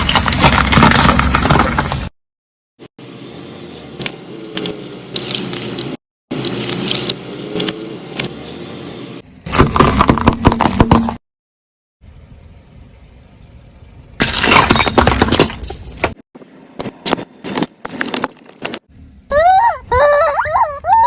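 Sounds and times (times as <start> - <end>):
tyre crushing plastic bottles: 0.0 - 2.1, 9.5 - 11.2.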